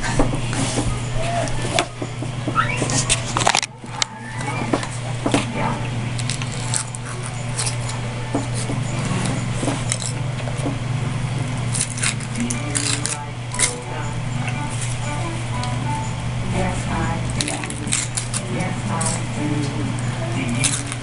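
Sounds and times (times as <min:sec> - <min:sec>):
steady low hum: 0:00.0 - 0:21.0
foil and plastic crinkling: 0:17.3 - 0:19.2.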